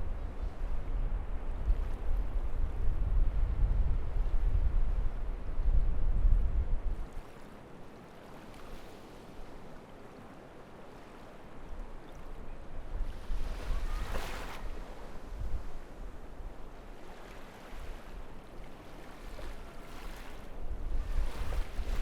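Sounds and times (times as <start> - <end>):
wind buffeting microphone: 0.0 - 7.2, 12.8 - 16.7, 20.4 - 22.0
surf washing: 7.0 - 22.0
wave rushing up beach: 13.2 - 15.8.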